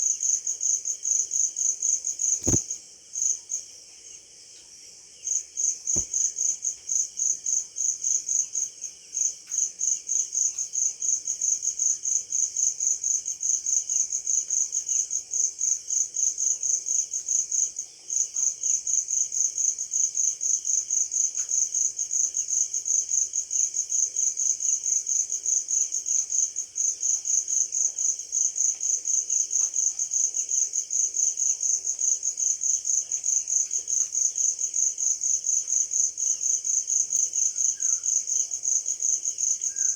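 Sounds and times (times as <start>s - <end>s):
cricket chirping: 0.0s - 2.8s, 22.3s - 39.9s
faint insects: 0.0s - 39.9s.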